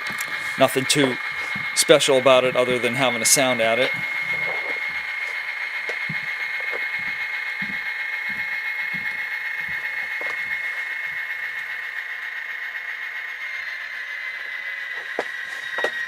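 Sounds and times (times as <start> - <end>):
high whine: 0.0 - 16.0
soft regular knocking: 3.8 - 11.3.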